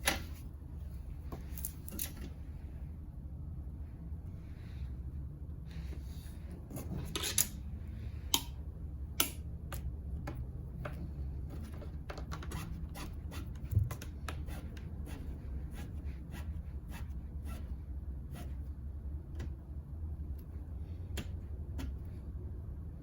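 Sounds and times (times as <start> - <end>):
clicks of small tools handled: 1.4 - 2.3.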